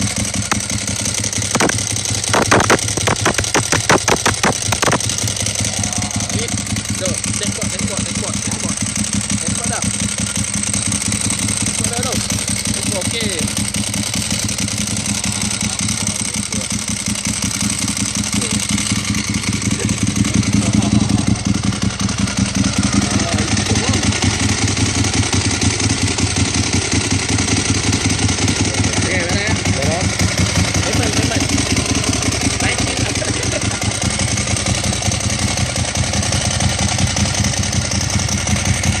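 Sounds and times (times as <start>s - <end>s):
dry clutch rattle: 0.0s - 39.0s
motorcycle engine idling: 0.0s - 39.0s.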